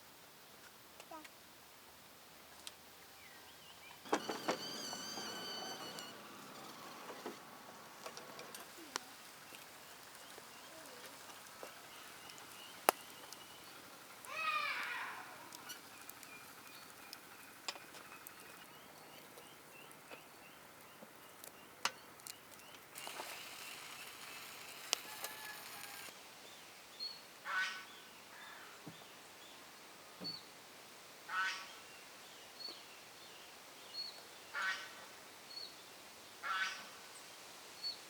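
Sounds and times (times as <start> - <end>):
faint bird chirping: 3.0 - 27.2
loud bird calls: 4.0 - 20.5
hiss: 23.0 - 26.1.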